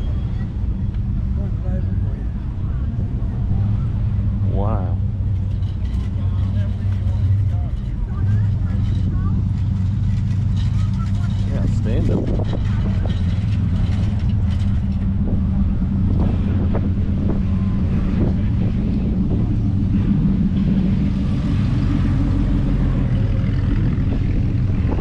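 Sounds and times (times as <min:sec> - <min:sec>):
engine idling: 0:00.0 - 0:25.0
wind buffeting microphone: 0:00.0 - 0:25.0.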